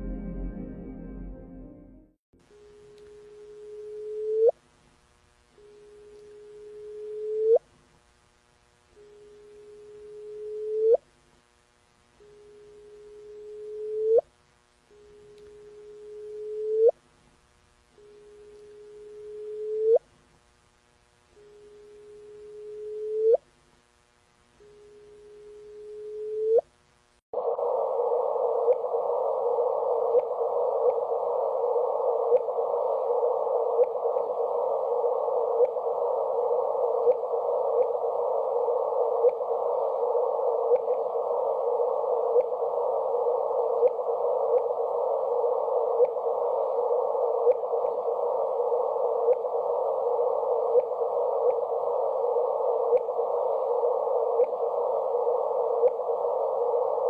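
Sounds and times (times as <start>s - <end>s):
hissing hum: 0.0s - 2.1s, 27.4s - 57.0s
tone sweeping up in pitch: 0.0s - 2.2s.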